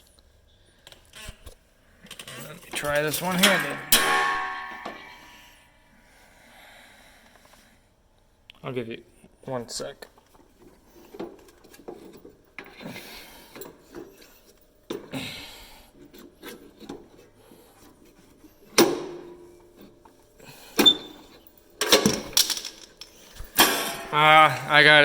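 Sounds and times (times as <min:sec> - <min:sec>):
metal parts rubbing and scraping: 0:02.1 - 0:05.3, 0:20.8 - 0:24.4
metal clattering: 0:02.1 - 0:05.5, 0:17.8 - 0:25.0
sharp metal clanks: 0:02.8 - 0:05.6, 0:20.8 - 0:24.7.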